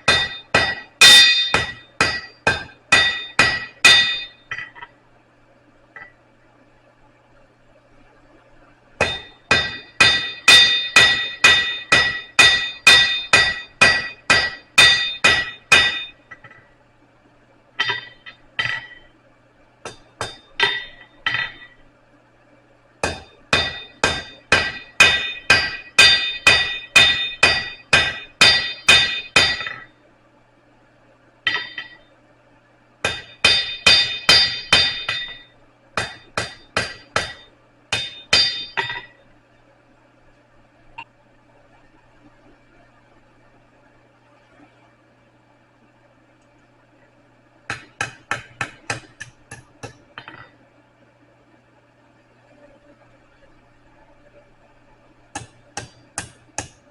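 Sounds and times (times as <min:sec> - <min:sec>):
hammer striking steel on anvil: 0:00.0 - 0:04.9, 0:09.0 - 0:16.6, 0:17.8 - 0:19.1, 0:19.8 - 0:21.8, 0:23.0 - 0:29.9, 0:31.5 - 0:32.0, 0:33.0 - 0:39.2, 0:47.7 - 0:50.5, 0:55.3 - 0:56.8.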